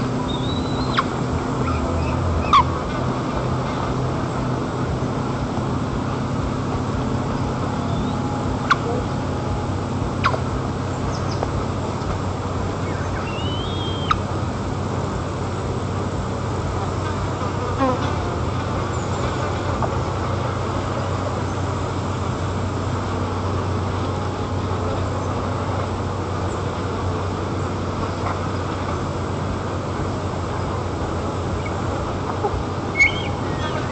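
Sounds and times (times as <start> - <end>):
low steady hum: 0.0 - 33.9
short high bird call: 12.9 - 14.2, 33.0 - 33.9.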